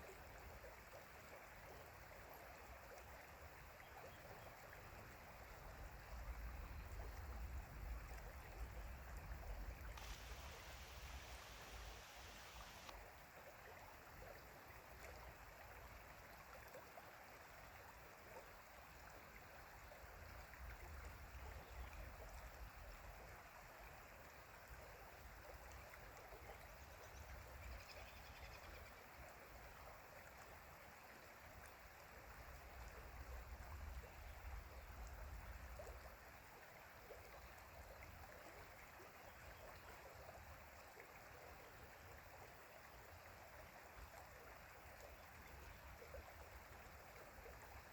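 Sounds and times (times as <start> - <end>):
stream water rushing: 1.0 - 26.8.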